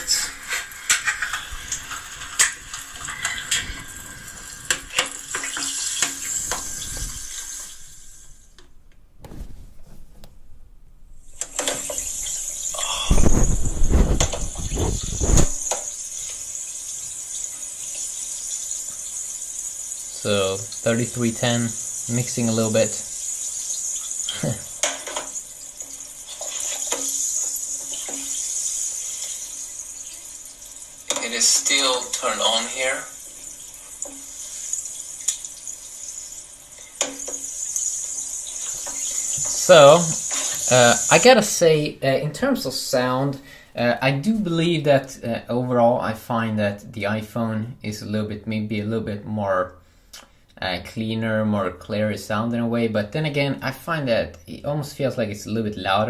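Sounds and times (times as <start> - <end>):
water splashing from phone speaker: 0.0 - 8.2, 20.3 - 36.2, 36.8 - 41.3.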